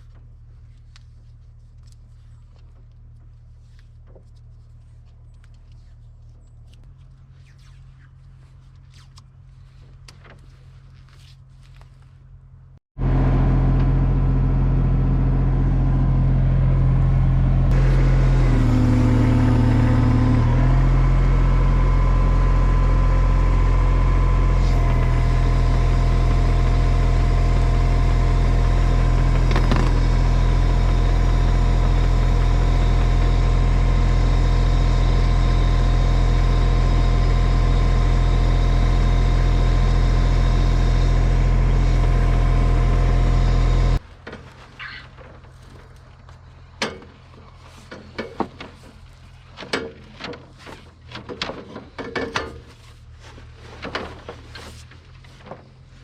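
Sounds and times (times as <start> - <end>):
engine running loudly: 13.0 - 44.0.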